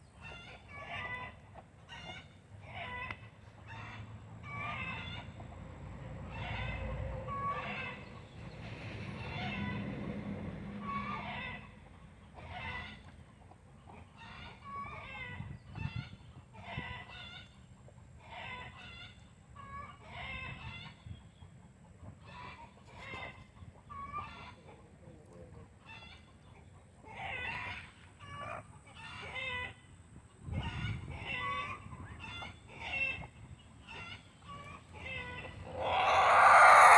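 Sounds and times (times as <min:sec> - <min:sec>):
chickens clucking: 0:12.2 - 0:29.8, 0:30.4 - 0:36.9.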